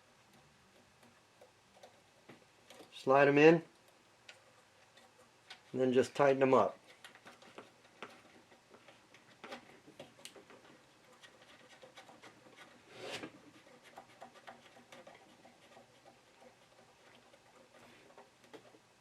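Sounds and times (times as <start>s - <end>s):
screw terminals clicking: 0.0s - 3.1s, 3.7s - 5.8s
scraping rustle: 6.7s - 18.8s.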